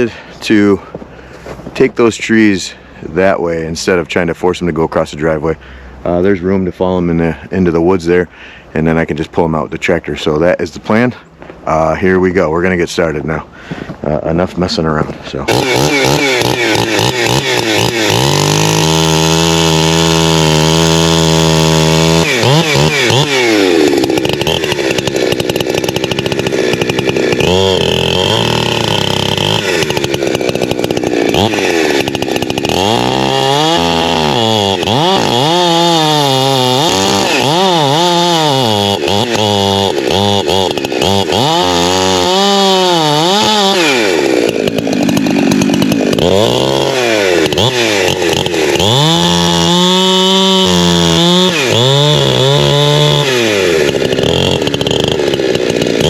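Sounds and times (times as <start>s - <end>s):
chainsaw running: 0.0s - 3.4s, 12.7s - 56.0s
chainsaw cutting: 0.0s - 56.0s.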